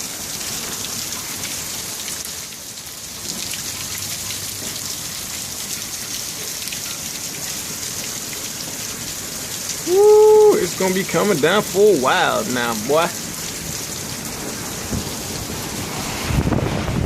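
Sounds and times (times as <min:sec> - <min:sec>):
heavy rain hissing: 0:07.3 - 0:17.0.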